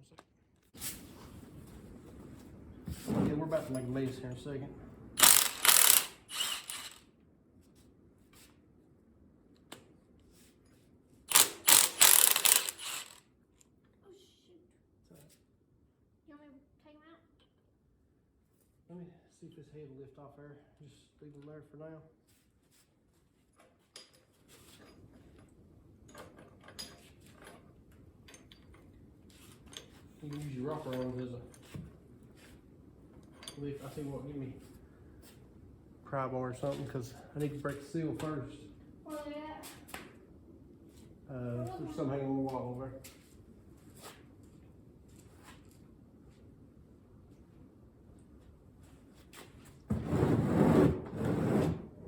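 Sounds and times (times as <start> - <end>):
metal parts and tools clinking: 5.2 - 7.0, 11.3 - 13.2
ratchet wrench clicking: 5.2 - 7.0, 11.3 - 13.2.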